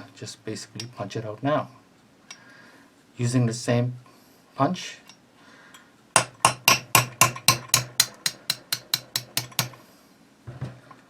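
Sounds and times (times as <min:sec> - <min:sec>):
hammer tapping metal punch: 0:06.2 - 0:09.8.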